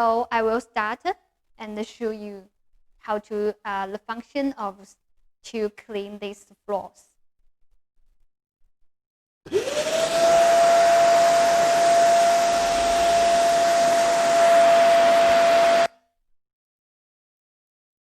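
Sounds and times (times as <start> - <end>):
vacuum cleaner motor whining: 9.5 - 15.9.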